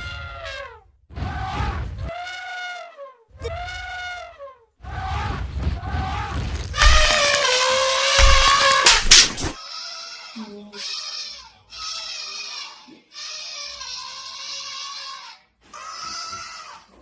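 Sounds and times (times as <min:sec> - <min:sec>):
elephant trumpeting: 0:00.0 - 0:12.6.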